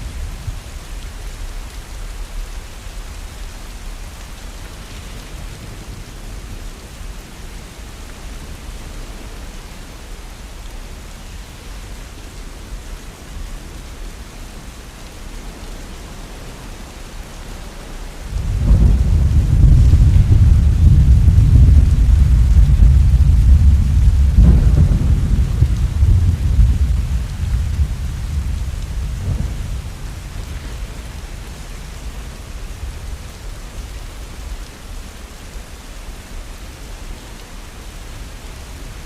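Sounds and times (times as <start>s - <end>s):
steady rain falling: 0.0s - 39.0s
thunder rumbling: 18.2s - 34.5s.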